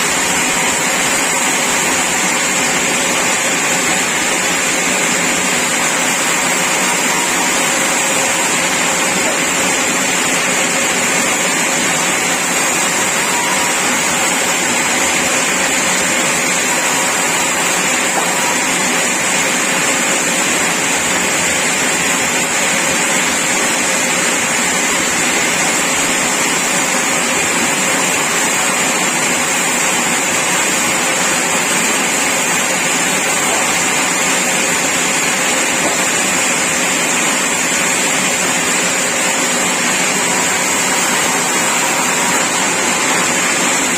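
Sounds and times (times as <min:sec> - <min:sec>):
sawmill saw running: 0:00.0 - 0:43.9.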